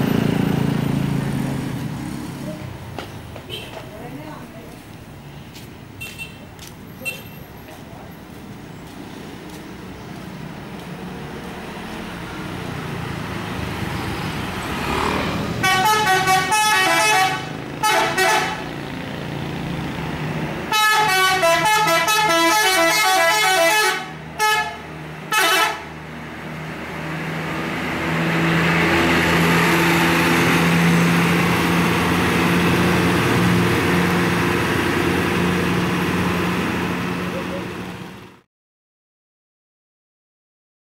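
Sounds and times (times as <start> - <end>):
bus engine: 0.0 - 38.5
musical air horn: 15.6 - 18.6, 20.7 - 25.8.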